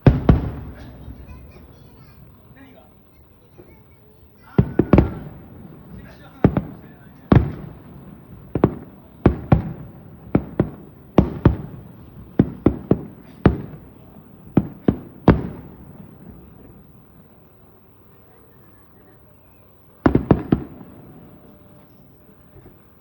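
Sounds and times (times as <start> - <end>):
firework shells bursting: 0.0 - 18.4, 19.6 - 23.0.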